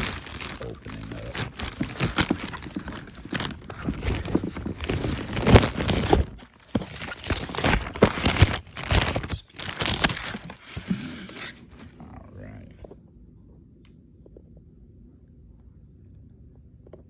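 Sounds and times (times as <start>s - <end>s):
packaging ripping: 0.0s - 11.8s
packaging crackling and rustling: 0.0s - 11.9s.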